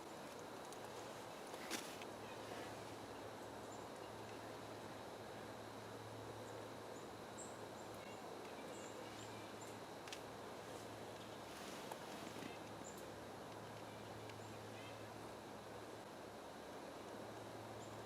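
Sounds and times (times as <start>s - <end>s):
faint hiss with low hum: 0.0s - 18.0s.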